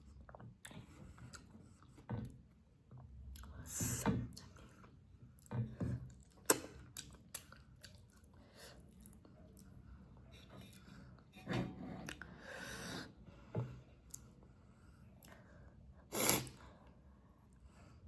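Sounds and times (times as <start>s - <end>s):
person chewing food: 6.1s - 9.7s.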